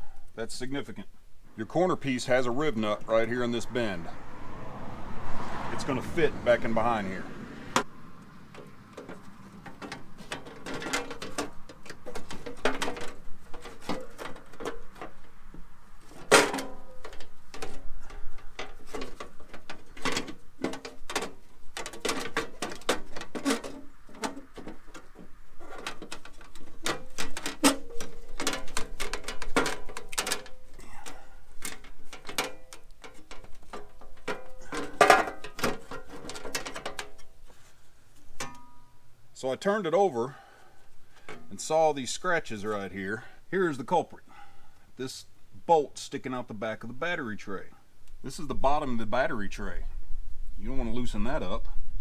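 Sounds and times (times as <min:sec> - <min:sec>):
metal panel clanking and knocking: 0:07.7 - 0:37.4.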